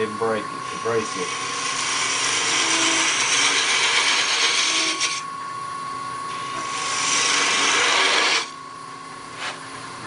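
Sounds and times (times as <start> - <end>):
wood lathe whine: 0.0 - 5.3, 6.2 - 8.7
gouge cutting wood hiss: 6.6 - 8.5.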